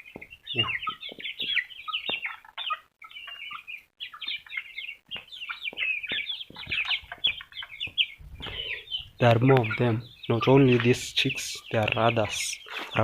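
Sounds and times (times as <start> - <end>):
chicks peeping: 0.0 - 13.0.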